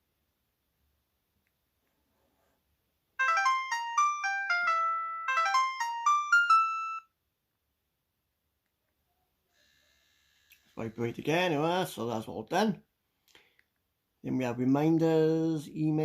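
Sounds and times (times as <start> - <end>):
phone ringtone melody: 3.2 - 7.1.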